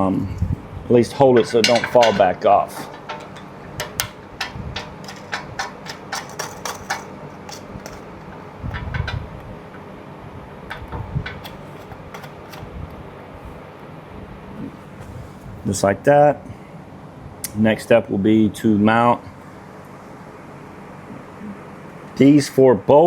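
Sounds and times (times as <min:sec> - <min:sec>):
metal hardware clinking: 0:01.1 - 0:09.9, 0:10.7 - 0:12.6.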